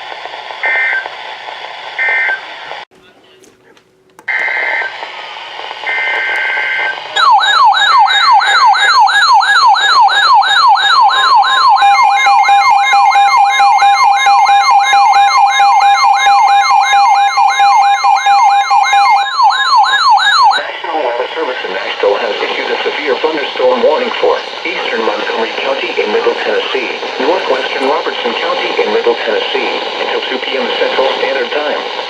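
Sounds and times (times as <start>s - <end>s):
warbling alarm tone: 5.8s - 20.8s
two-pitch data tones: 5.9s - 20.7s.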